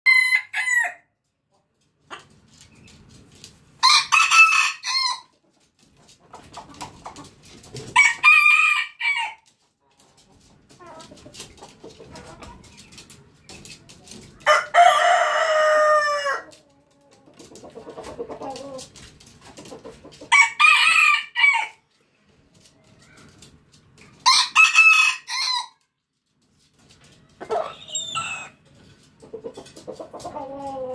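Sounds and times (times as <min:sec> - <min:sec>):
rooster crowing: 0:00.1 - 0:01.0, 0:03.8 - 0:05.3, 0:08.0 - 0:09.4, 0:14.5 - 0:16.4, 0:20.3 - 0:21.8, 0:24.2 - 0:25.8.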